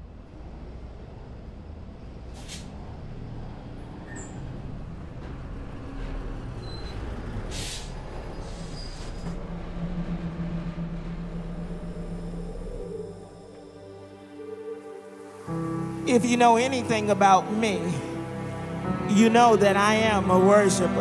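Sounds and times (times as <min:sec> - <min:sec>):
low rumbling background noise: 0:00.0 - 0:14.4
short hisses: 0:02.4 - 0:02.7
steady low tone: 0:08.1 - 0:21.0.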